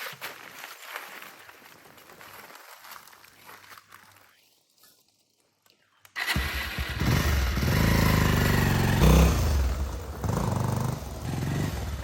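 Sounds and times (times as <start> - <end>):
engine running: 6.2 - 12.0.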